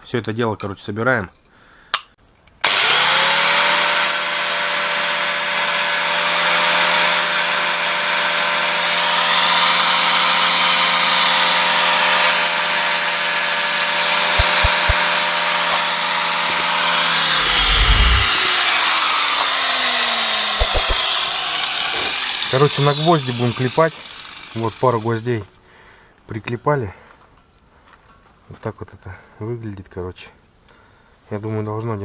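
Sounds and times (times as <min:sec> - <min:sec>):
angle grinder grinding metal: 0:02.7 - 0:25.4.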